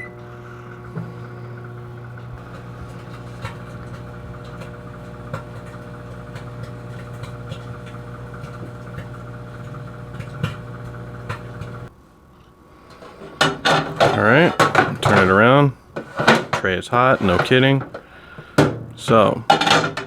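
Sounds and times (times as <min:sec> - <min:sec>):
microwave oven humming: 0:00.0 - 0:12.0.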